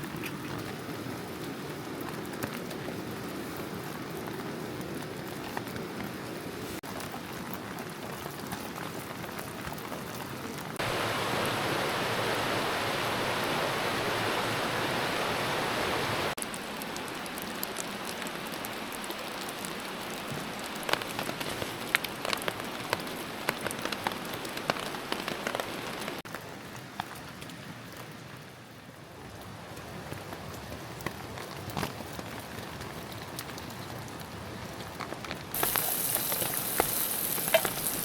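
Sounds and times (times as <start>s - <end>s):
steady rain falling: 0.0s - 38.0s
sharp drips spattering: 35.6s - 38.0s.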